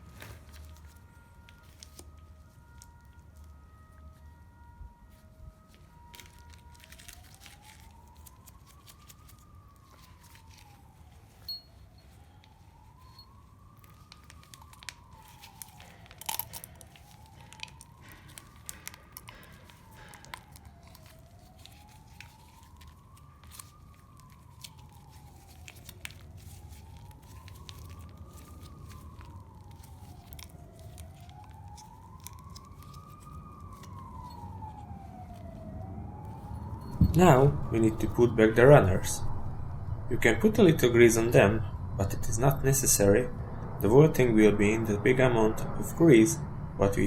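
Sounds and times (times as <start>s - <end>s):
plastic crinkling and clicking: 0.0s - 37.1s
emergency siren wailing: 0.0s - 47.0s.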